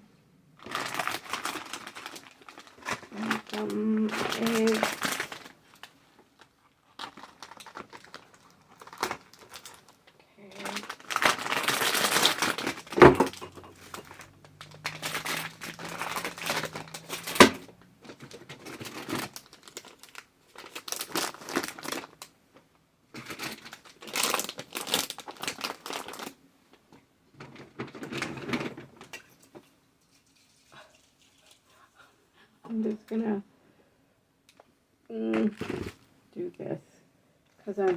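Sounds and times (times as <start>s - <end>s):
packaging rustling: 0.6s - 22.3s, 23.2s - 26.4s, 27.4s - 29.5s.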